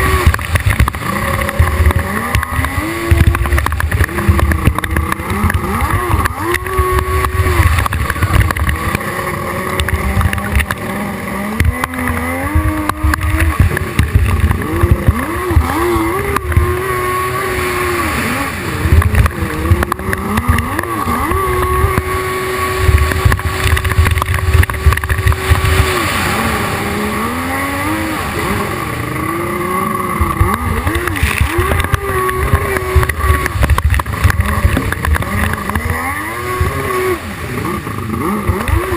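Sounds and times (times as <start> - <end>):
jet ski engine revving: 0.0 - 38.9.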